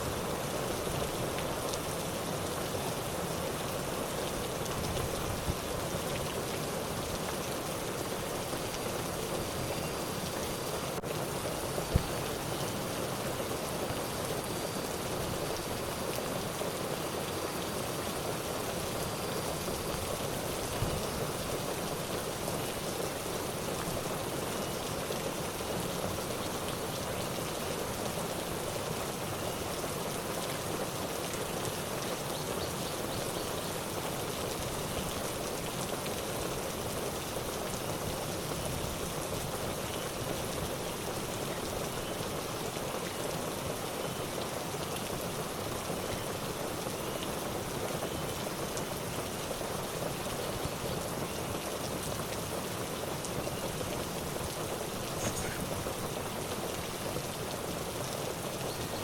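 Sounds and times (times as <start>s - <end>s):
water hissing: 55.1s - 56.0s.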